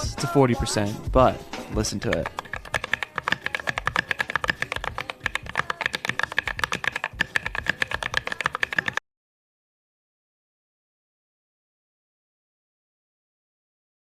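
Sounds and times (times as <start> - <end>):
fast typing on mechanical keyboard: 2.0 - 9.0.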